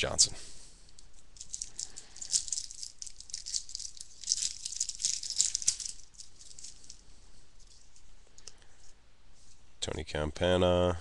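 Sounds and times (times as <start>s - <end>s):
foil wrapper crinkling: 1.4s - 7.0s.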